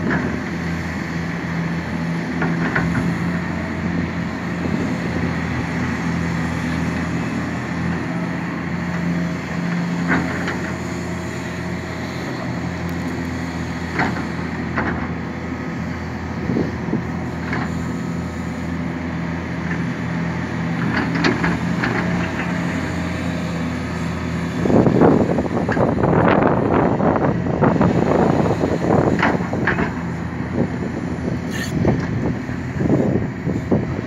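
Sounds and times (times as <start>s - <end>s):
excavator diesel engine humming: 0.0s - 34.0s.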